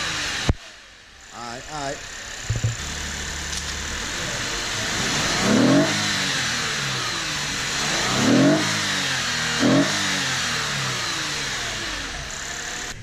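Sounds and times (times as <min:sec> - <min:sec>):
car engine revving: 0:00.0 - 0:01.3, 0:01.9 - 0:13.0.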